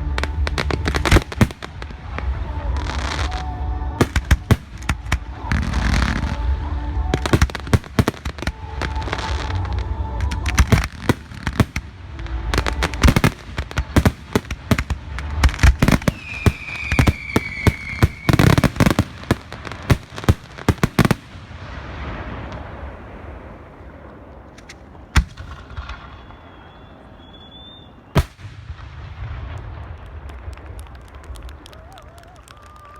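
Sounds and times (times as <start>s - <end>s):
firework whistle: 0.0s - 21.3s, 24.6s - 28.4s
fireworks bangs and crackling: 0.0s - 32.9s.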